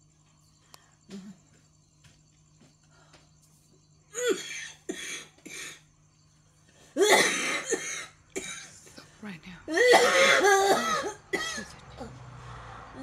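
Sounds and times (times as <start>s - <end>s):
woman coughing: 4.1s - 5.8s, 7.0s - 9.0s, 9.7s - 11.8s.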